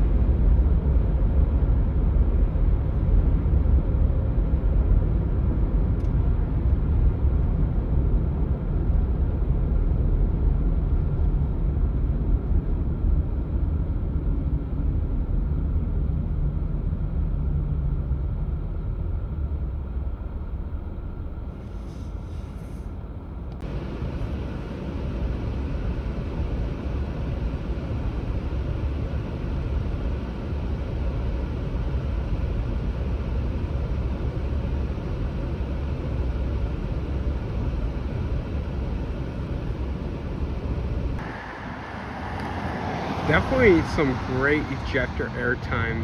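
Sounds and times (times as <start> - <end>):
low outdoor rumble: 0.0 - 46.0.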